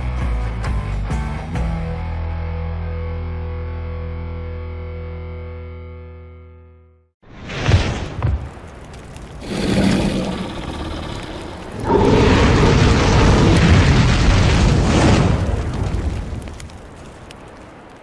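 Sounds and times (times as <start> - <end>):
rumbling noise: 7.4 - 18.0.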